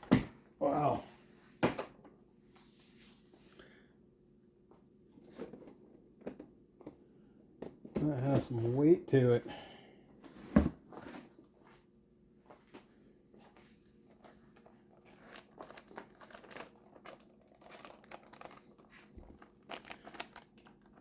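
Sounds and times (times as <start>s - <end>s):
packaging crinkling and rustling: 13.9s - 21.0s.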